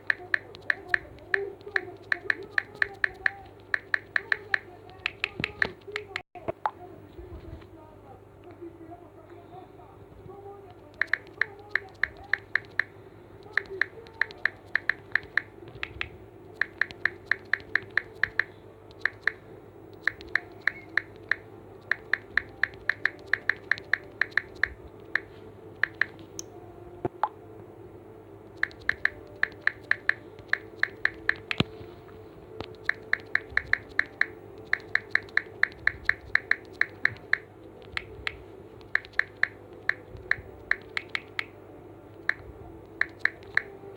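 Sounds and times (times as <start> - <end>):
phone keyboard tap clicks: 0.0 - 6.6, 11.0 - 12.9, 13.5 - 19.4, 20.0 - 25.2, 25.8 - 26.2, 28.6 - 31.7, 32.6 - 41.5, 43.0 - 43.7.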